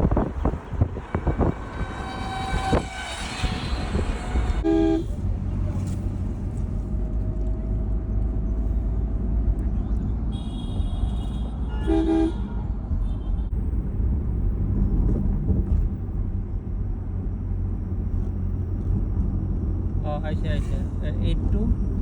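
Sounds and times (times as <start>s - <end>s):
car road rumble: 0.0s - 22.0s
vehicle horn honking: 3.4s - 5.2s, 10.3s - 13.5s.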